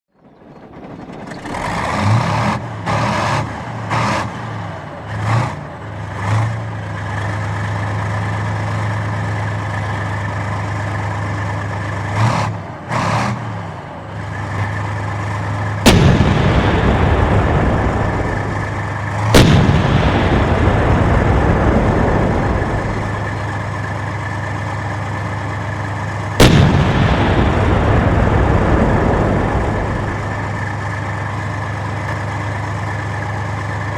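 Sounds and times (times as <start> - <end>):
tank engine running: 0.1 - 33.9
tank cannon shots: 15.5 - 24.6, 26.2 - 32.3.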